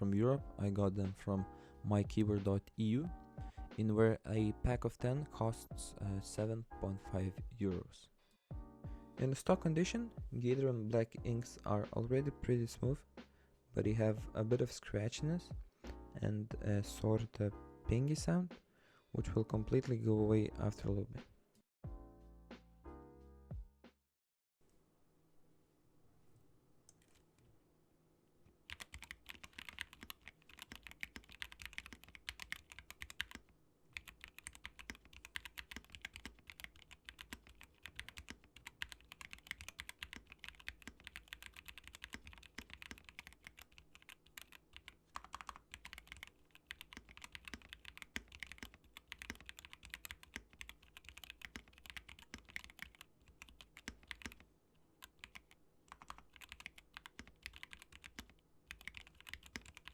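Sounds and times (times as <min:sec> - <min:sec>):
typing on mechanical keyboard: 0:28.7 - 0:54.4, 0:55.0 - 0:59.9.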